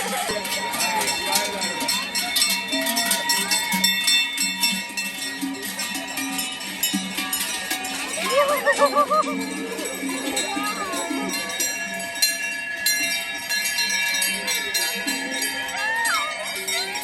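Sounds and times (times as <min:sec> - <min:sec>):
cowbells clanging: 0:00.0 - 0:17.0
crowd voices: 0:00.0 - 0:17.0.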